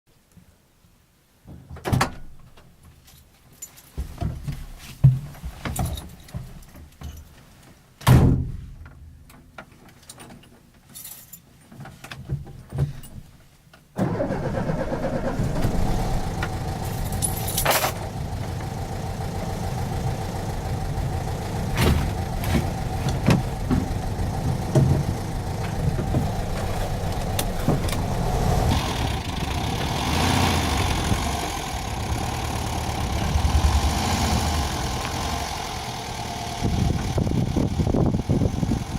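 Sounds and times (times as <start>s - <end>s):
van engine idling: 14.0s - 38.9s.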